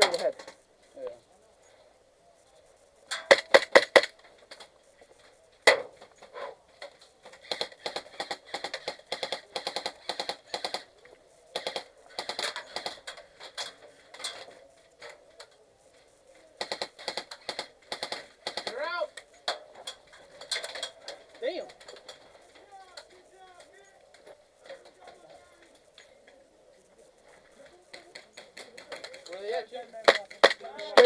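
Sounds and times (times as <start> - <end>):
airsoft guns firing bursts: 3.1 - 4.7, 6.8 - 15.2, 16.6 - 25.8, 27.6 - 31.0.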